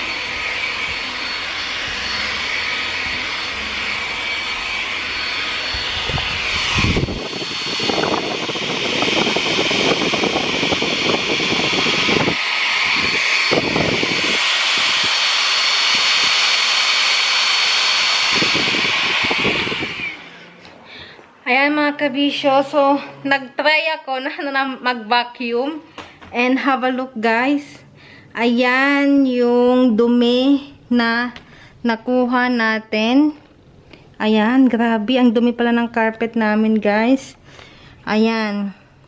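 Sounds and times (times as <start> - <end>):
stick vacuum whining: 0.0 - 21.4
vacuum head rushing over carpet: 0.0 - 23.5.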